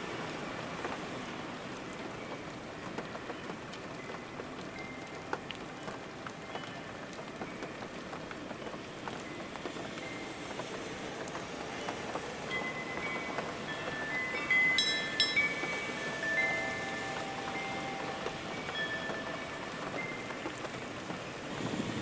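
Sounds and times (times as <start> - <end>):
raindrops ticking: 0.0 - 22.0
steady rain: 0.0 - 22.0
bright ringing chime tones: 12.5 - 20.3.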